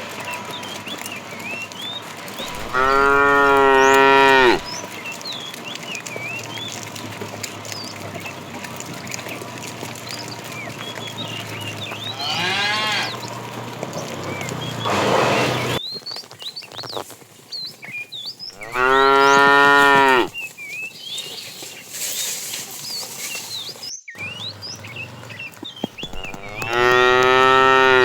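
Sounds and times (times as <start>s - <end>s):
cow mooing: 2.4s - 4.7s, 12.0s - 13.2s, 18.6s - 20.3s, 26.0s - 28.0s.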